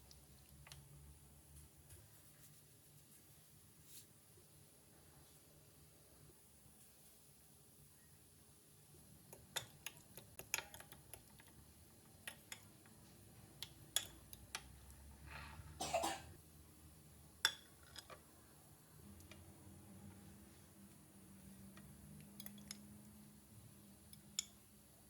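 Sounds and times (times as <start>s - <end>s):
objects clicking and knocking: 9.3s - 11.6s.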